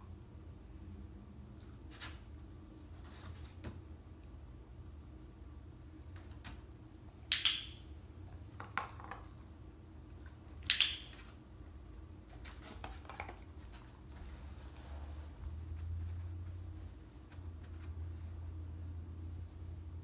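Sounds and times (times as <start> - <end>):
training clicker double clicks: 7.3 - 7.8, 10.7 - 11.2.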